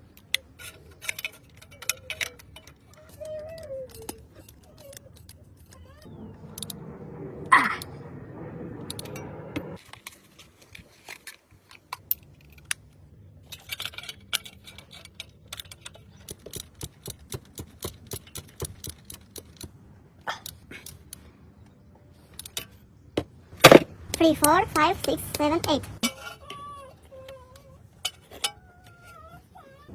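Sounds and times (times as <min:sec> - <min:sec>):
metallic clicks of hand tools: 0:00.0 - 0:05.8, 0:13.5 - 0:19.8
steady hum: 0:06.1 - 0:09.8.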